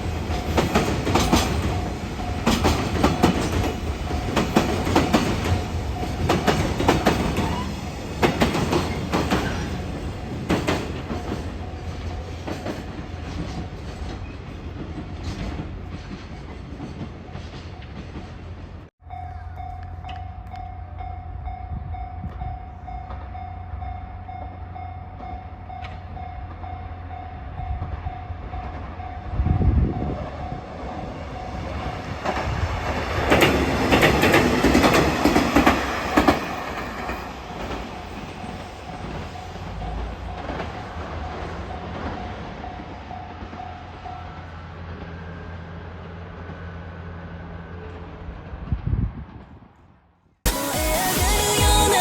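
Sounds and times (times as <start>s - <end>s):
train wheels clattering: 0.1s - 18.7s, 32.1s - 44.0s.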